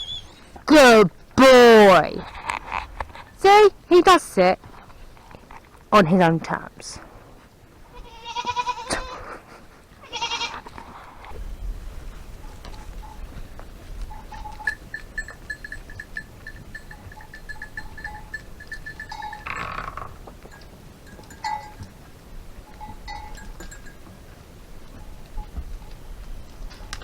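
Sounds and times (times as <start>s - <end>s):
goats bleating: 7.8s - 9.4s, 10.0s - 10.8s.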